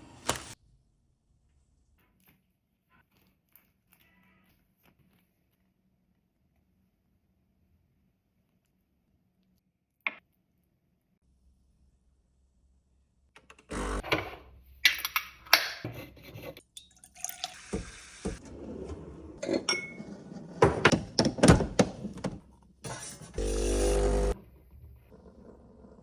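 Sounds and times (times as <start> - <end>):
dishes and cutlery clinking: 19.4 - 20.9.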